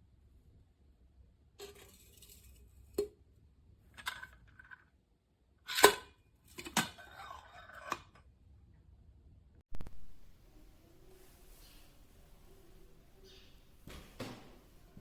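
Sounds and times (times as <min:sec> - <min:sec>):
metal kitchenware clinking: 0:05.7 - 0:08.1.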